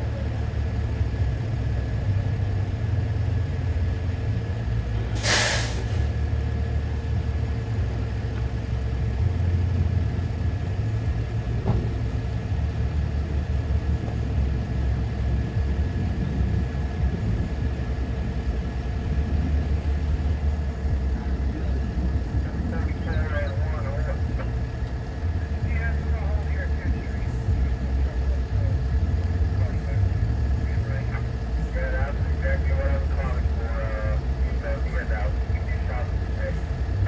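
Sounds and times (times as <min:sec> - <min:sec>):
diesel locomotive idling: 0:00.0 - 0:37.0
air brakes hissing: 0:05.2 - 0:06.2.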